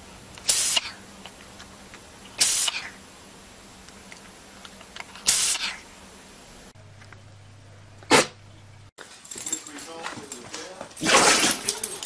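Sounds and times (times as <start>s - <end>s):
animal sneezing: 0.5s - 1.0s, 2.4s - 3.0s, 5.2s - 5.8s, 8.1s - 8.4s.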